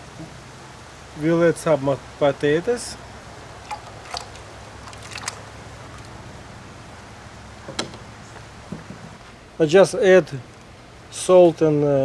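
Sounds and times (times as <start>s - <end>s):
potatoes dropping into a pot: 3.7s - 6.2s.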